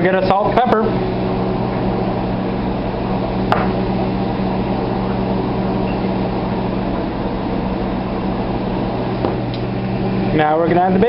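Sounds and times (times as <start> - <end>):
kitchen appliance humming: 0.0 - 11.0.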